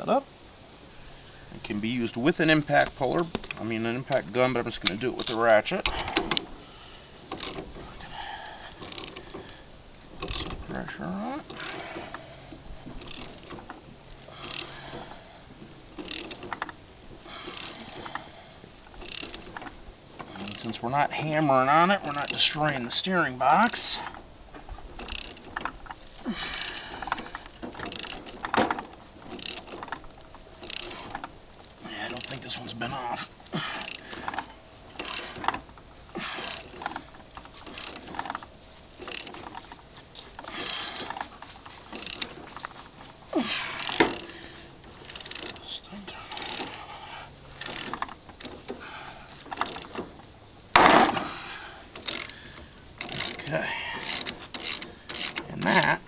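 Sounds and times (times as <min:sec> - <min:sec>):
ratchet wrench clicking: 0:07.3 - 0:07.6, 0:16.0 - 0:16.7, 0:17.5 - 0:18.3, 0:19.0 - 0:19.5, 0:25.0 - 0:25.6, 0:26.6 - 0:29.9, 0:30.6 - 0:31.3, 0:33.8 - 0:35.6, 0:39.0 - 0:39.6, 0:41.9 - 0:42.4, 0:43.8 - 0:44.3, 0:45.0 - 0:48.8, 0:49.5 - 0:50.0, 0:52.0 - 0:52.4, 0:53.0 - 0:55.4.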